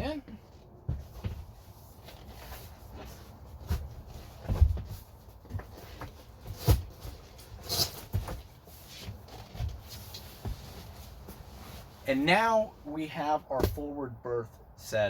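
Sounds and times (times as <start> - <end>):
cushions thumping: 0.0 - 7.2, 8.0 - 11.8, 13.6 - 14.0
scuffing rustles: 0.3 - 12.1.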